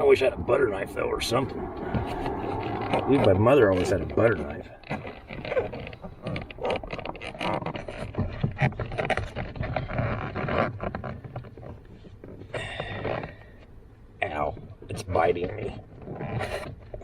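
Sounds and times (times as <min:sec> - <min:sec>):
plastic trim clicks and creaks: 0:04.8 - 0:13.4.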